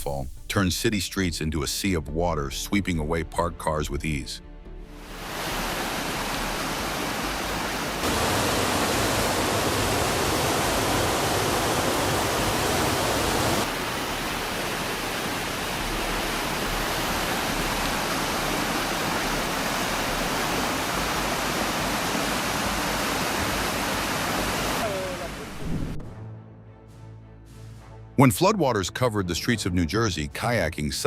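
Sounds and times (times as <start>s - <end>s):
floodwater rushing: 5.0s - 25.9s.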